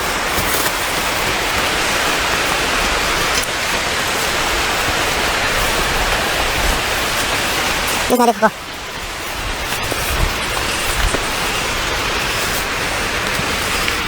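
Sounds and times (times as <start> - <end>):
running water hiss: 0.0 - 14.0.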